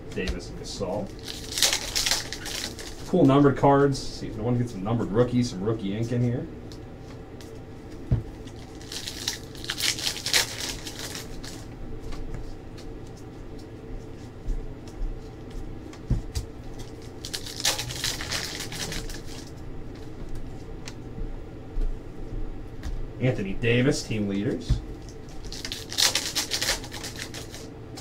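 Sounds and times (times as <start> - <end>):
wrapper tearing and rustling: 1.1 - 3.2, 8.4 - 11.7, 16.8 - 19.5, 25.3 - 27.7.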